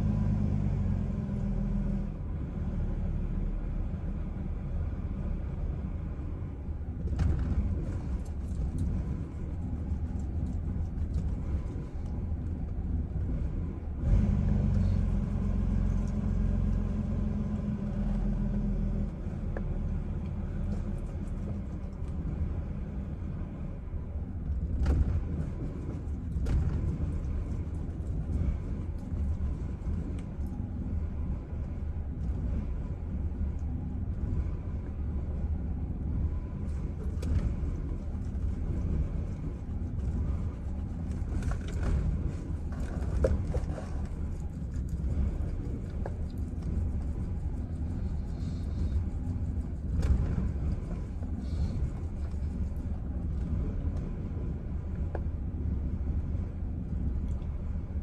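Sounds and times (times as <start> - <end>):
car engine idling roughly: 37.0 - 53.7.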